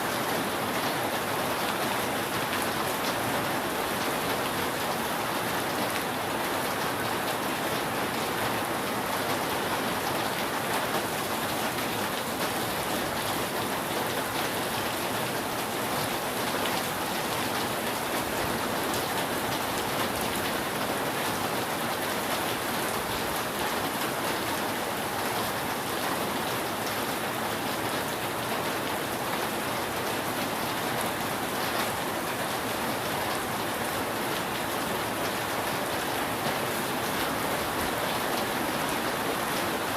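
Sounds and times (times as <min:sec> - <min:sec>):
rain falling on a roof: 0:00.0 - 0:39.9.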